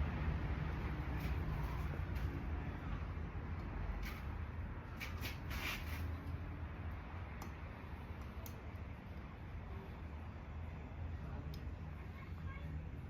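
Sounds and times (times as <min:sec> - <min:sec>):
handling scrapes and clicks: 0:04.9 - 0:06.4.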